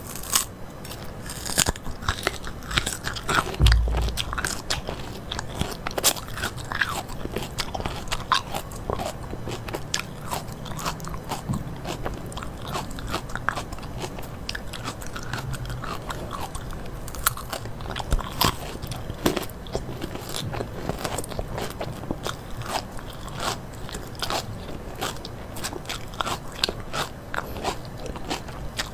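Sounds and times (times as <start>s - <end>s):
chewing crunchy food: 0.0s - 4.0s, 7.4s - 28.9s
low thump: 3.6s - 4.8s.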